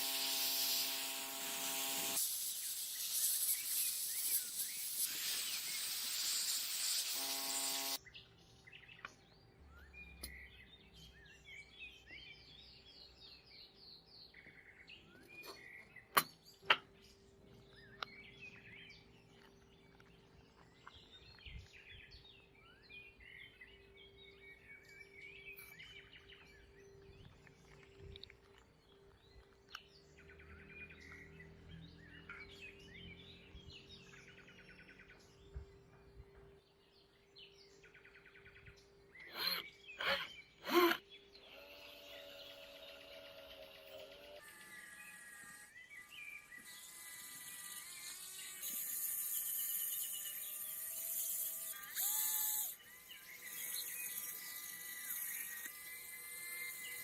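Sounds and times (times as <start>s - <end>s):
loud hiss: 0.0s - 8.0s
songbirds chirping: 8.0s - 47.3s.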